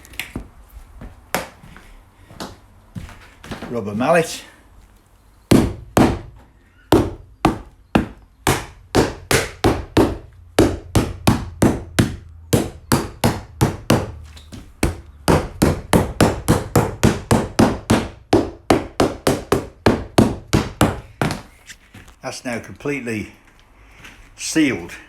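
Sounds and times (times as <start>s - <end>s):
rubber mallet knocking floor tiles: 5.5s - 21.6s.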